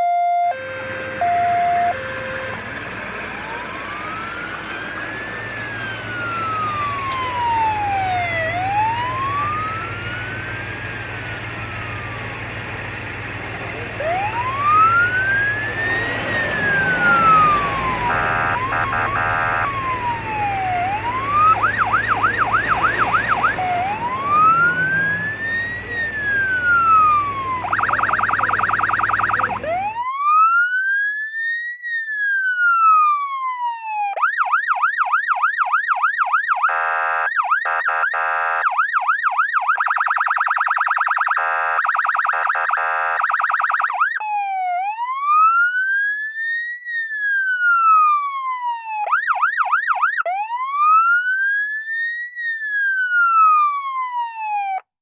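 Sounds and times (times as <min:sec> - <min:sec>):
low engine hum: 0:00.0 - 0:30.2
road noise: 0:00.0 - 0:54.9
police car siren: 0:00.0 - 0:55.0.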